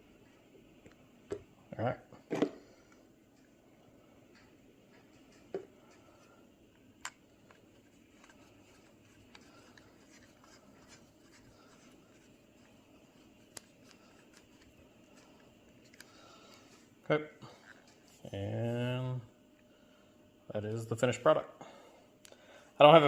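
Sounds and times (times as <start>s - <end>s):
small handling sounds: 4.2s - 18.7s.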